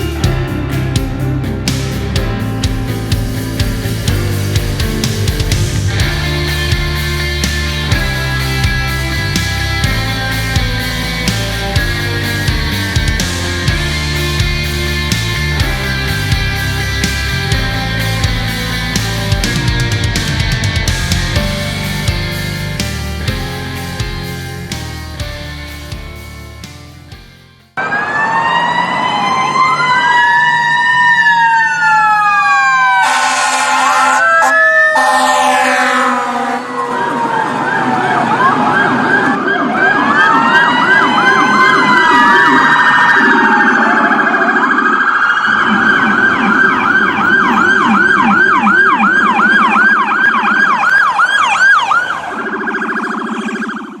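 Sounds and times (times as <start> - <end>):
electronic sirens wailing: 27.8 - 54.0
harsh buzzing tone: 33.0 - 36.7.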